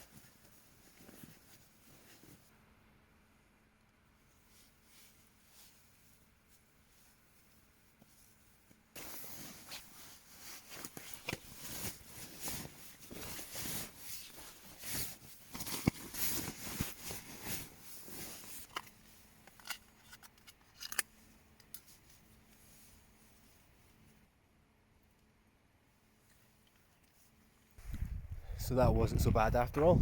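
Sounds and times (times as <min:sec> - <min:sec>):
fabric rustling and crinkling: 0:00.0 - 0:02.6, 0:04.4 - 0:20.3.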